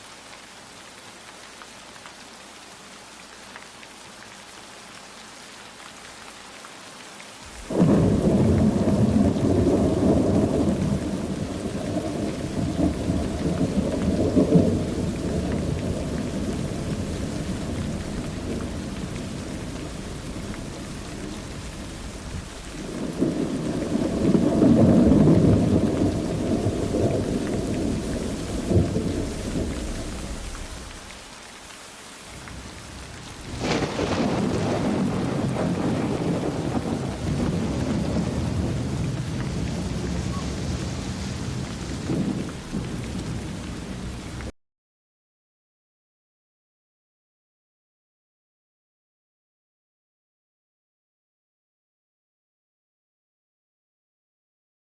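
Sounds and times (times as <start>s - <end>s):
steady rain: 0.0s - 44.5s
thunder rolling: 7.5s - 31.2s, 32.4s - 44.2s.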